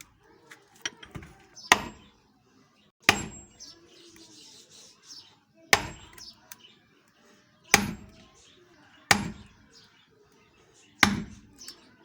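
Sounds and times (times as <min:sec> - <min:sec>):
hammer striking wood: 0:01.0 - 0:02.1, 0:03.1 - 0:03.5, 0:05.8 - 0:06.2, 0:07.8 - 0:08.1, 0:09.1 - 0:09.5, 0:11.0 - 0:11.4.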